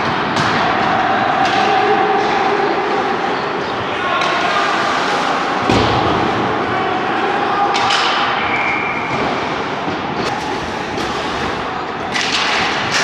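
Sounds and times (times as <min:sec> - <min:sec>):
hockey sticks and puck clacking: 0:00.0 - 0:13.0
steady din: 0:10.2 - 0:13.0.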